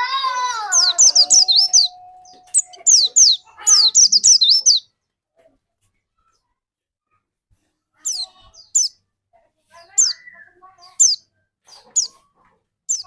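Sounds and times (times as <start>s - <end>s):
bird singing falling notes: 0.0s - 4.8s.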